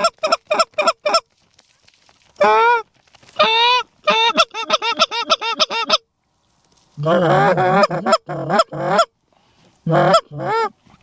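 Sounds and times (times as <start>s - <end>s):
goose honking and clucking: 0.0s - 1.2s, 3.4s - 6.1s, 7.0s - 9.1s, 9.8s - 10.8s.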